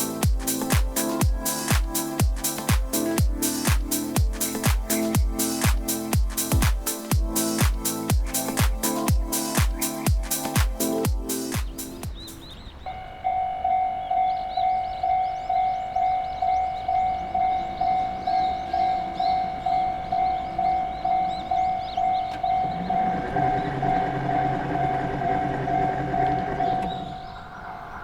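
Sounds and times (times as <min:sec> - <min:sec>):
approaching train rumble: 0:00.0 - 0:28.0
level crossing warning bell: 0:12.9 - 0:27.9.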